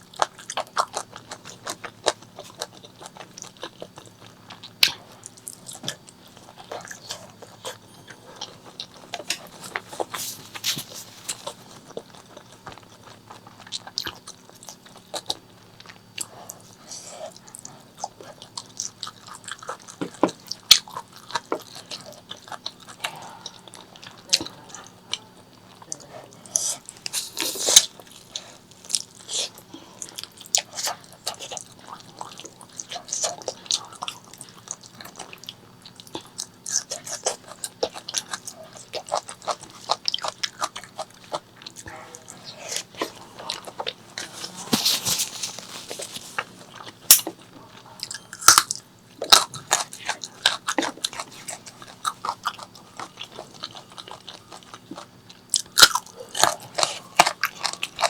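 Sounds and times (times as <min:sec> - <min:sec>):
chewing and biting: 0:00.0 - 0:58.0.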